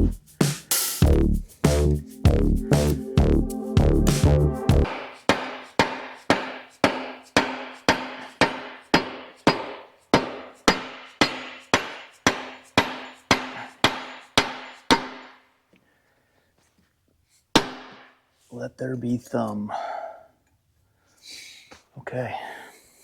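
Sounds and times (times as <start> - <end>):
hammer ringing on steel: 5.3 - 15.1.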